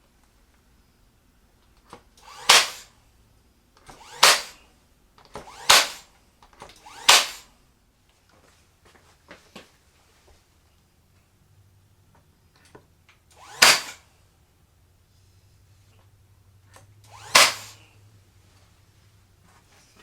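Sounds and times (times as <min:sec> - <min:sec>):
sharp loud wood cracks: 0:02.4 - 0:02.9, 0:03.8 - 0:04.6, 0:06.6 - 0:07.4, 0:13.5 - 0:14.0, 0:17.2 - 0:17.8
soft rustle: 0:08.0 - 0:10.9, 0:18.3 - 0:20.0.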